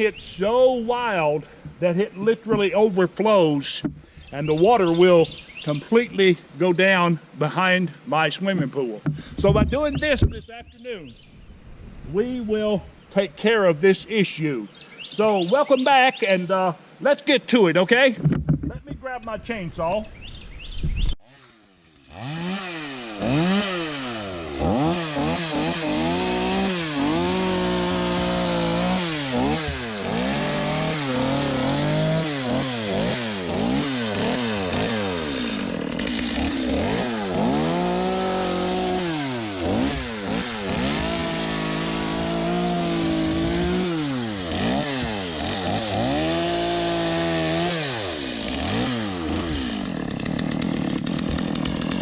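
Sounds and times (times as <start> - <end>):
chainsaw revving: 21.2 - 52.0.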